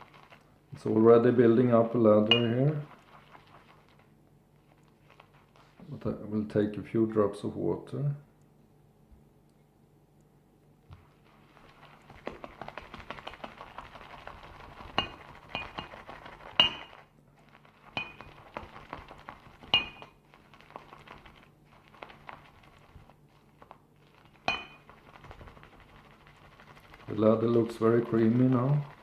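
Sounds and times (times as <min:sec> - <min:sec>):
brush swishing lather: 0:00.0 - 0:06.2, 0:10.9 - 0:29.0
brush clinking on ceramic bowl: 0:02.2 - 0:02.8, 0:14.9 - 0:17.0, 0:17.9 - 0:18.4, 0:19.6 - 0:20.2, 0:24.4 - 0:24.9.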